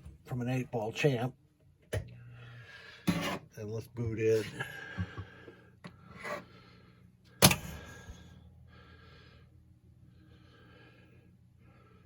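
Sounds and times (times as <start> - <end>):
pinball machine loud pop: 7.4 - 7.8.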